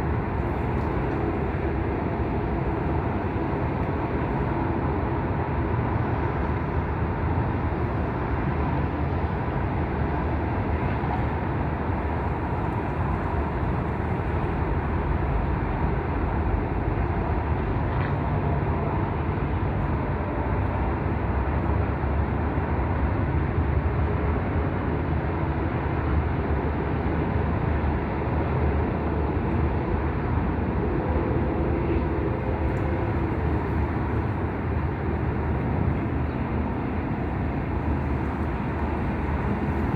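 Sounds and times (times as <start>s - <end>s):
wind blowing across microphone: 0.0s - 22.8s, 25.2s - 39.9s.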